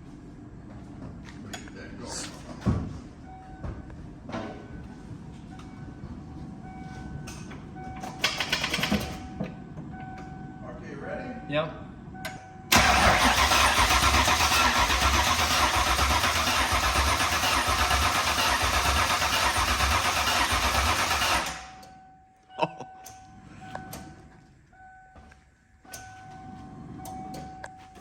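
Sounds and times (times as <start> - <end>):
starter cranking engine: 12.7 - 21.8.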